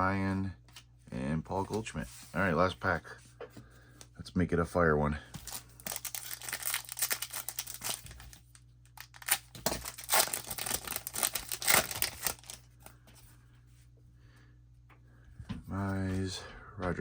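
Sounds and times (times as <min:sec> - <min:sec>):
wrapper tearing and crinkling: 0:05.5 - 0:12.6.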